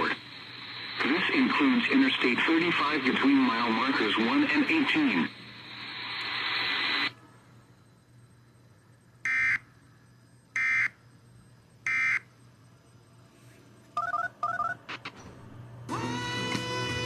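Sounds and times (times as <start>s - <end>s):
radio hiss: 0.0s - 7.2s
stepped beep groups: 9.3s - 9.6s, 11.9s - 12.2s.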